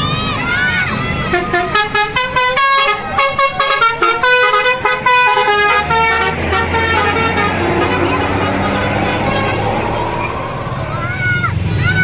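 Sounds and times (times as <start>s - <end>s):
low engine hum: 0.0s - 12.0s
multi-tone air horn melody: 1.3s - 9.9s.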